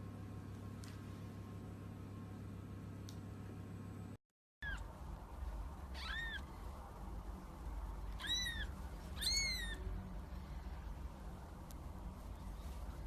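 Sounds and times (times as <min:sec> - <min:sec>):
low steady hum: 0:00.0 - 0:13.0
kitten mewing: 0:05.9 - 0:06.5, 0:08.1 - 0:09.8.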